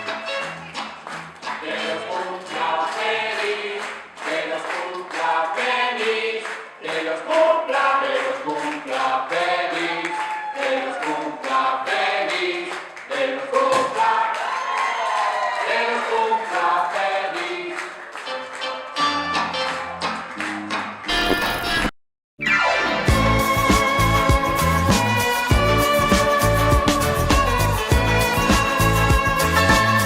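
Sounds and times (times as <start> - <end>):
voices singing together: 1.6 - 14.5, 15.4 - 18.0
steady beat: 23.1 - 30.0.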